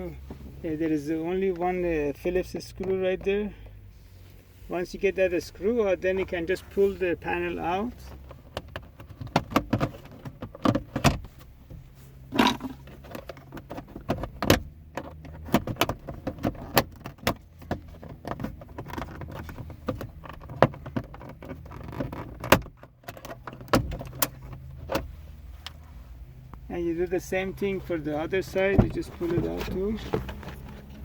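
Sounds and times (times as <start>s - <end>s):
low steady hum: 0.0s - 31.0s
plastic trim clicking and rattling: 8.1s - 11.2s, 12.4s - 25.0s.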